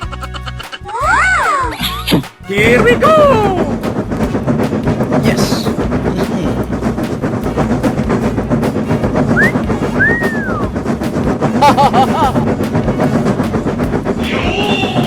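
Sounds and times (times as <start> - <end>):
fast clattering rhythm: 0.0 - 15.0
dense rumble: 2.5 - 15.0
whistle glide: 8.9 - 10.8, 14.1 - 15.0
warbling cartoon sound: 9.3 - 10.7, 14.1 - 15.0.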